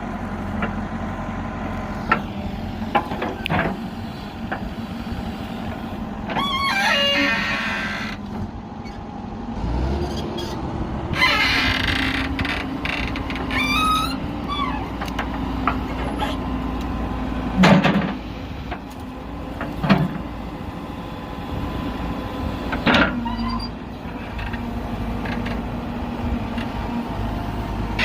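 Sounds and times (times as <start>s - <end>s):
diesel engine running: 0.0s - 28.0s
brief squeals: 6.4s - 8.2s, 13.5s - 14.9s, 23.2s - 23.8s.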